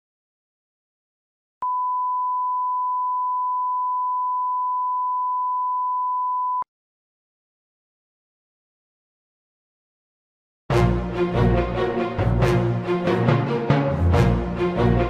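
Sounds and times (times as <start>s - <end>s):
censor bleep: 1.6s - 6.7s.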